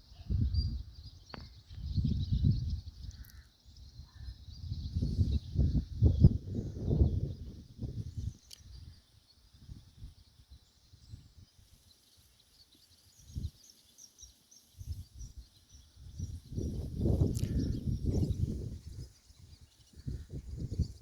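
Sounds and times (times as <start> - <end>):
wind buffeting microphone: 0.2 - 3.2, 3.8 - 10.3, 14.8 - 21.0.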